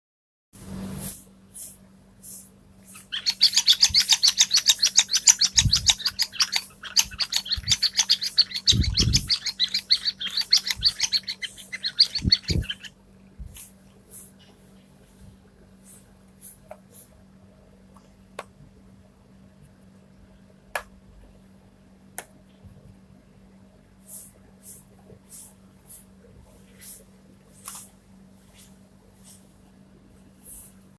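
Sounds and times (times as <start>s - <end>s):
electronic high squeaky chirps: 2.9s - 12.9s.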